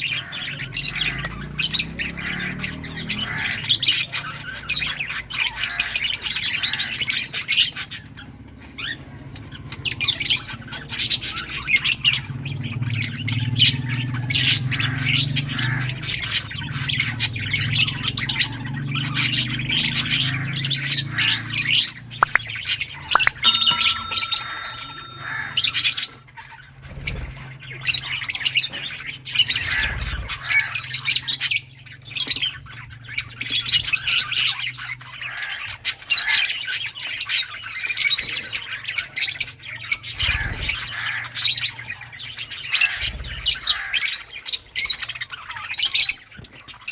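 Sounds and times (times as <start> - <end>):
lovebirds chirping and squawking: 22.2 - 22.5, 23.2 - 25.9.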